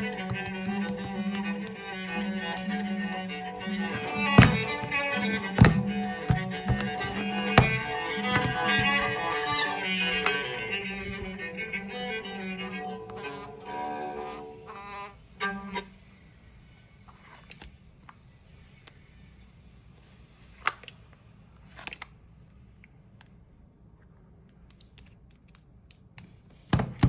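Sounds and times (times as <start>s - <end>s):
sharp clicks and taps: 0.0s - 2.9s, 3.6s - 11.2s
phone ringtone string melody: 0.0s - 14.8s.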